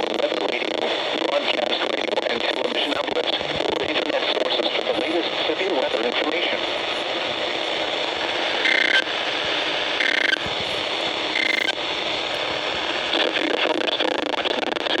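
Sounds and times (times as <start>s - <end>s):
radio static hiss: 0.0s - 15.0s
two-tone digital data squawk: 8.6s - 9.0s, 10.0s - 10.5s, 11.3s - 11.8s.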